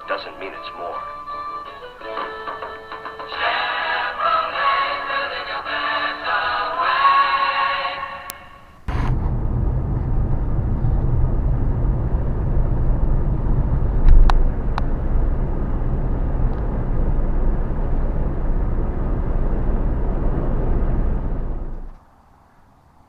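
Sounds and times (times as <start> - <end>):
vehicle engine rumbling: 8.6 - 22.2.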